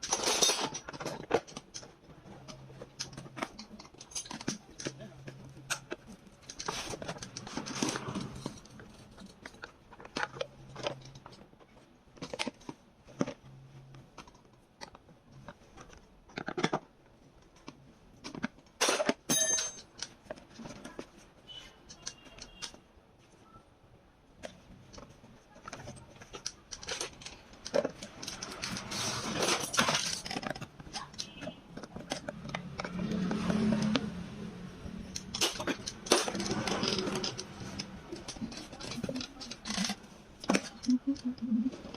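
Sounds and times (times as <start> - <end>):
small hard objects clinking: 24.9 - 41.9.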